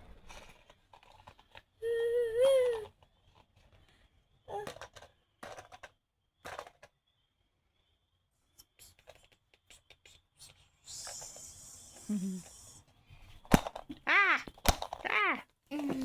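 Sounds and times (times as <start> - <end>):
plastic fidget toy clicks: 4.5 - 6.9, 10.9 - 12.7, 13.4 - 16.0.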